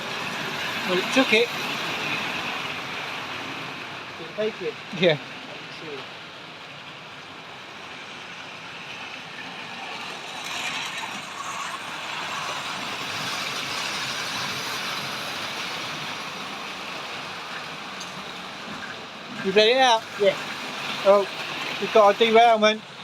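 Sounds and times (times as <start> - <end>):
model train rolling on track: 0.0 - 23.0.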